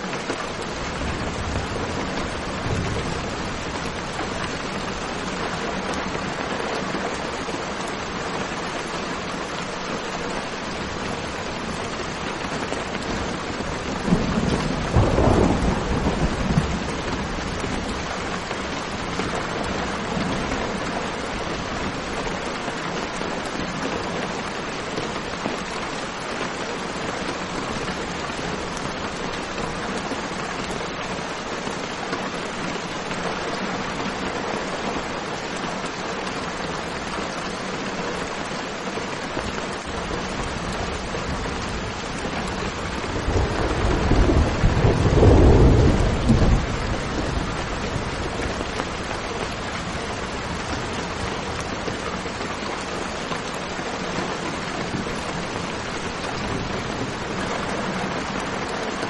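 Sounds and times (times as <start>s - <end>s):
heavy rain: 0.0s - 59.0s
thunder rumbling: 13.0s - 21.5s, 40.2s - 51.4s.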